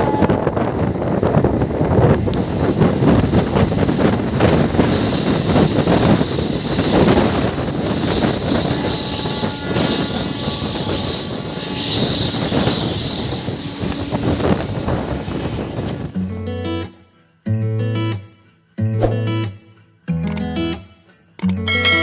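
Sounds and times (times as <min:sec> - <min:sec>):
train wheels rumbling and clattering: 0:00.0 - 0:16.2
wheel screech: 0:04.8 - 0:16.2.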